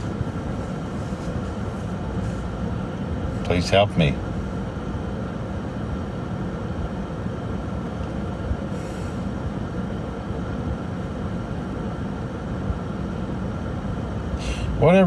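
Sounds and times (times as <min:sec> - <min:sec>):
low rumbling background noise: 0:00.0 - 0:15.0.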